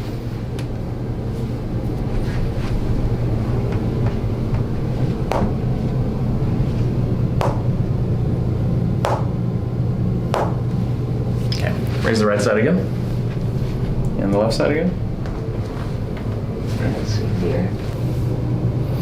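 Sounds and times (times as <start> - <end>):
low mechanical motor hum: 0.0 - 19.0
sharp knocks: 4.0 - 5.6, 7.4 - 7.8, 9.0 - 9.4, 10.3 - 10.7.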